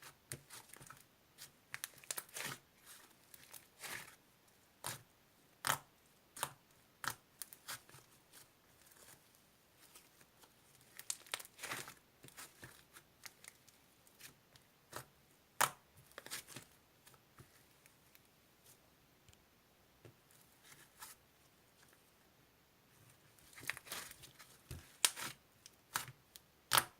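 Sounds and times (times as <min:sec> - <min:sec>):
paper or plastic crinkling: 0:23.5 - 0:25.4.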